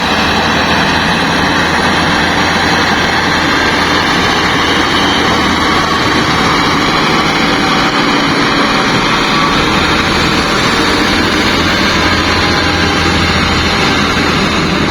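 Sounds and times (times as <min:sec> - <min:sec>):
excavator diesel engine running: 0:00.0 - 0:14.9.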